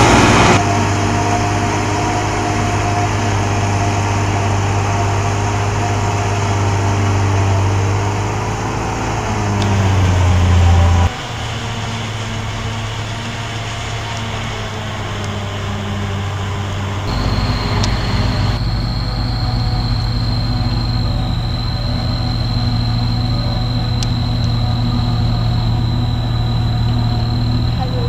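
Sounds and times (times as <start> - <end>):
diesel machinery engine drone: 0.0 - 28.0
high steady whine: 9.4 - 28.0.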